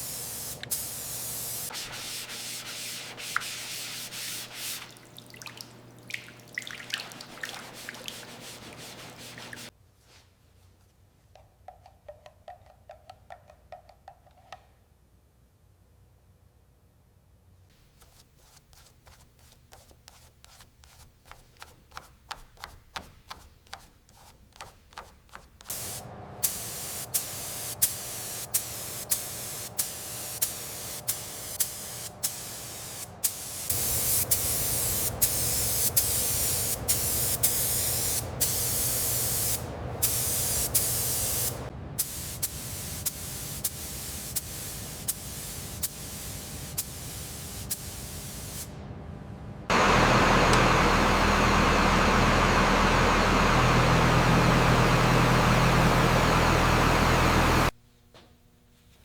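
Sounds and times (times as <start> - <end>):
paint spray gun hissing: 0.0 - 5.2, 7.0 - 9.7, 25.6 - 48.6.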